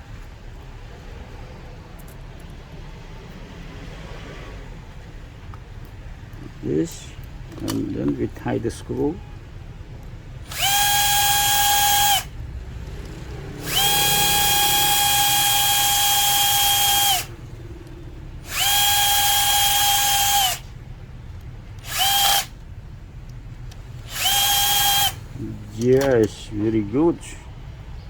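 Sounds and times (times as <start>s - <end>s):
electric screwdriver motor whine: 10.5s - 12.3s, 13.6s - 17.3s, 18.4s - 20.7s, 21.8s - 22.6s, 24.1s - 25.2s.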